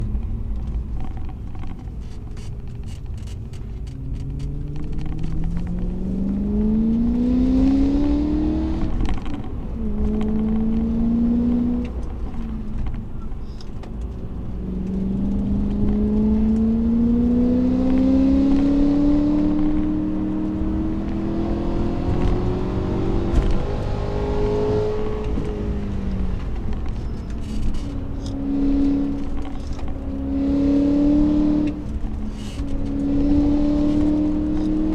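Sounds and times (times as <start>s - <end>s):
car engine accelerating through gears: 0.0s - 34.9s.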